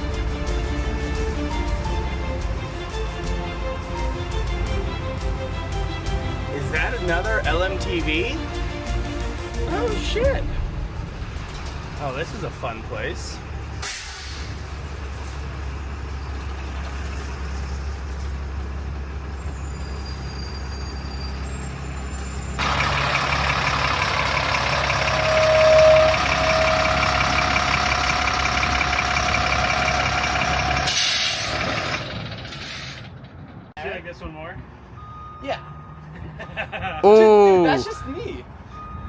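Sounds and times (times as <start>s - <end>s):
diesel truck rumbling: 0.0s - 39.0s
whining tone: 22.6s - 32.5s.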